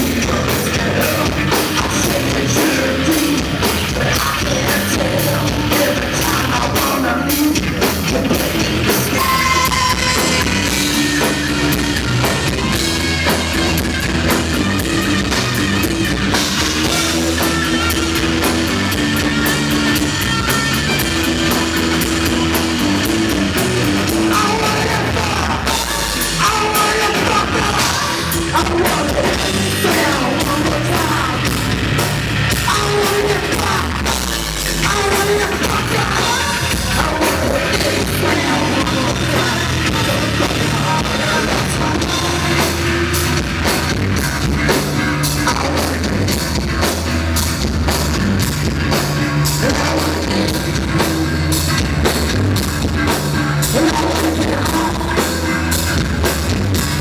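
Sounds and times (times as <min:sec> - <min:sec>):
loud rock band playing: 0:00.0 - 0:57.0.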